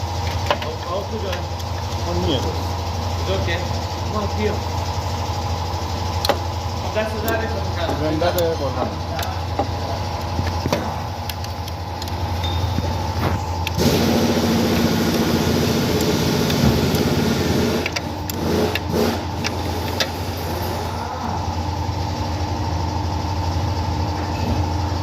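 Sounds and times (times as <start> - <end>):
car engine running: 0.0 - 25.0
sharp clicks and knocks: 6.2 - 6.5, 17.8 - 20.2.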